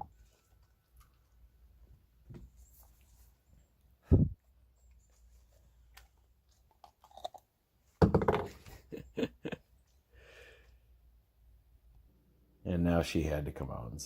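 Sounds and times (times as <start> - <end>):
dog crunching biscuit: 6.0 - 7.5.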